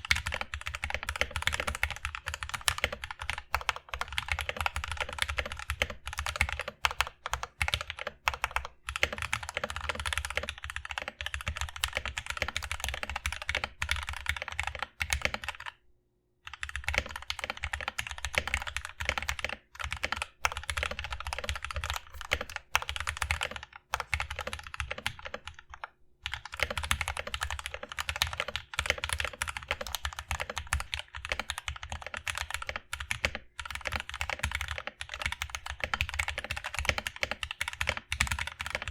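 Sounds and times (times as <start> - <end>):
mechanical keyboard typing: 0.0 - 15.8, 16.4 - 38.9.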